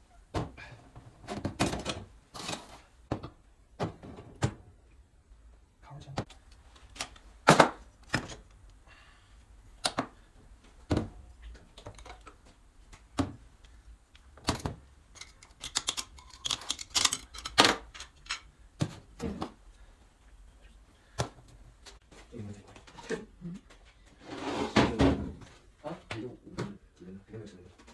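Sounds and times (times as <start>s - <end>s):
metallic clicks of hand tools: 15.2s - 18.4s.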